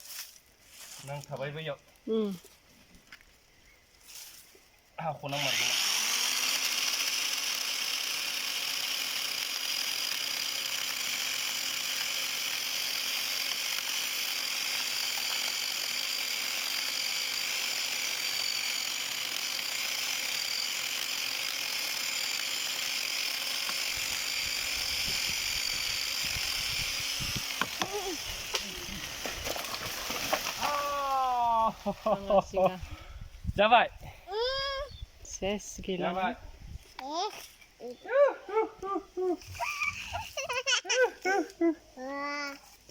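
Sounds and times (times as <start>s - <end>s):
electric chainsaw running: 5.2s - 32.2s, 39.4s - 41.3s.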